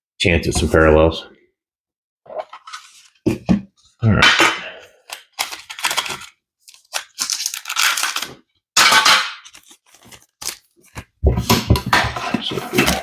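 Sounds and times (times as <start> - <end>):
foil wrappers crinkling and tearing: 5.2 - 8.4, 9.4 - 11.1.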